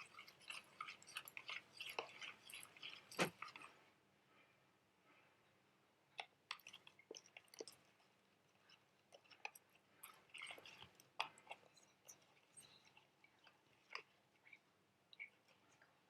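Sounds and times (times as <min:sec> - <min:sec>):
spoon stirring in water: 0:00.0 - 0:03.7.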